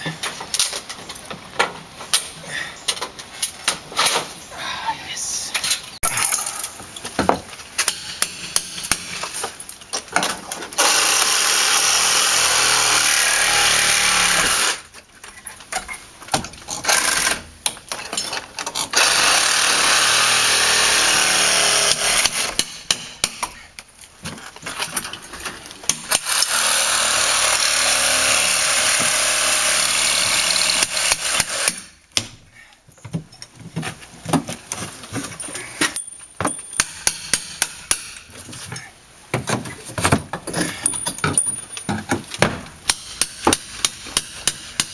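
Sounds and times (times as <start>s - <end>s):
power tool running: 10.8s - 14.8s, 26.1s - 31.7s.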